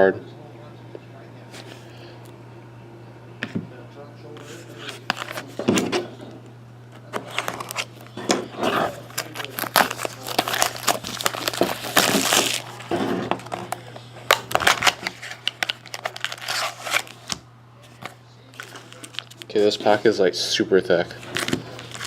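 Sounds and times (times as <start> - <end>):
card wrappers crinkling: 4.8 - 5.6, 7.0 - 20.2, 21.0 - 22.0
wrapper tearing rip: 8.6 - 12.9, 13.5 - 17.4.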